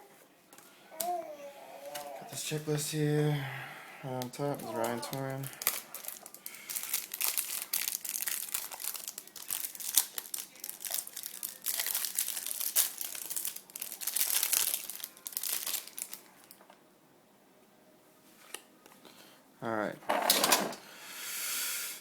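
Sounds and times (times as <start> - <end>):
plastic wrapping crinkling: 4.1 - 16.6.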